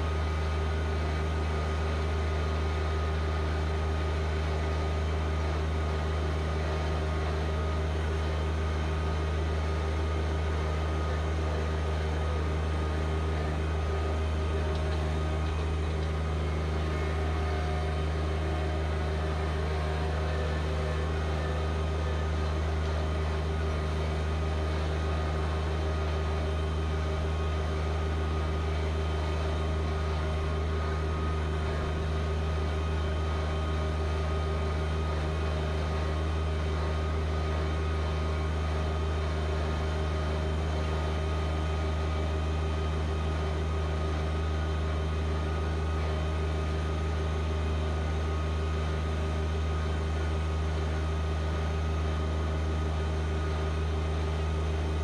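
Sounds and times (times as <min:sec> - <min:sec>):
tractor diesel engine running: 0:00.0 - 0:55.0.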